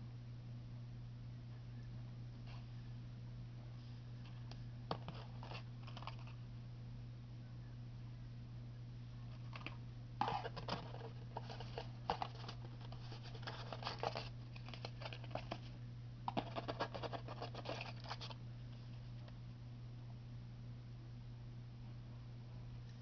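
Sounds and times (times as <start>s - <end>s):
steady low hum: 0.0s - 23.0s
hands rustling packaging: 4.3s - 6.4s, 9.3s - 18.4s.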